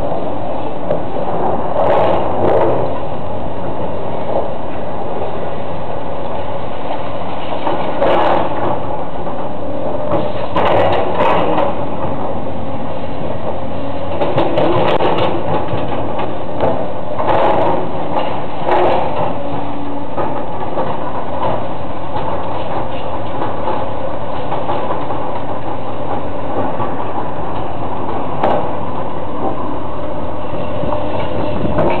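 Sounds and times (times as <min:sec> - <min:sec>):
demolition machinery engine running: 0:00.0 - 0:32.0
debris knocking and crashing: 0:14.2 - 0:19.5.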